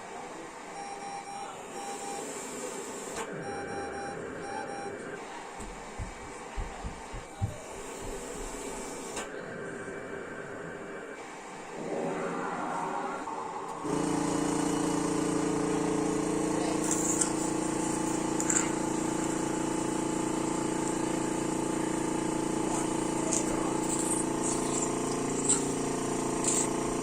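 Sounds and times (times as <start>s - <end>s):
electric pump motor humming: 13.8s - 27.0s.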